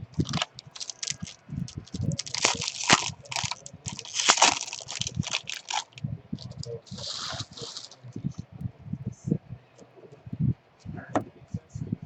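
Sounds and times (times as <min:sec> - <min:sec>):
foil wrappers crinkling and tearing: 0:00.1 - 0:08.0.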